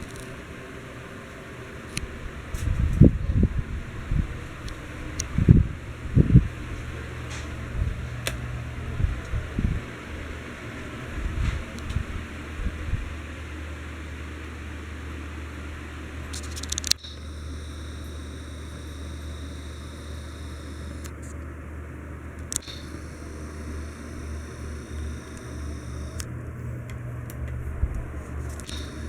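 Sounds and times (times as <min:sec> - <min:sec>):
ceiling fan running: 0:00.0 - 0:29.0
sharp click: 0:16.3 - 0:21.4, 0:22.4 - 0:26.3, 0:28.5 - 0:29.0.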